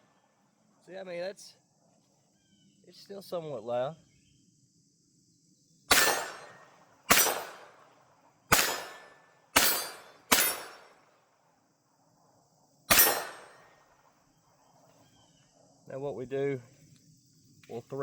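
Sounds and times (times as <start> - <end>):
pistol shots ringing on steel: 5.9 - 11.2, 12.9 - 14.1.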